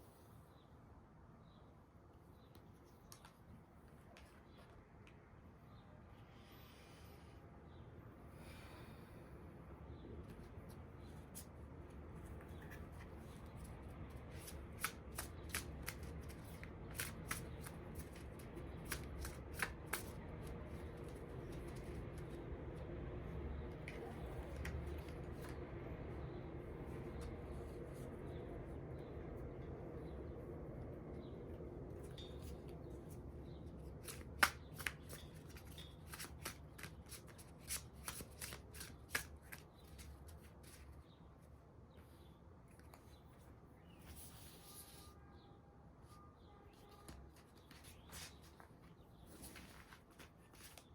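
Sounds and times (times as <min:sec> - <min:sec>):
cards being shuffled: 0:10.2 - 0:22.5, 0:23.7 - 0:25.6, 0:33.6 - 0:41.0, 0:47.1 - 0:48.7, 0:49.3 - 0:50.9.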